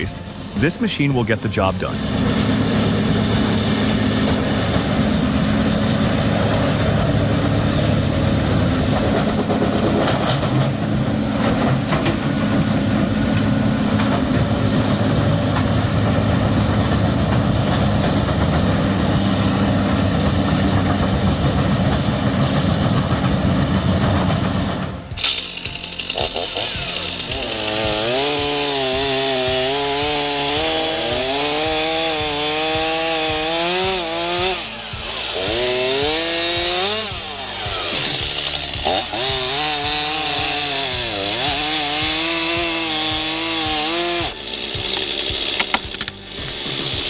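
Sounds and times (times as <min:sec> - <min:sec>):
cutter mill grinding wood: 0:00.0 - 0:47.0
diesel engine drone: 0:00.0 - 0:47.0
sharp knocks and cracks: 0:44.2 - 0:47.0.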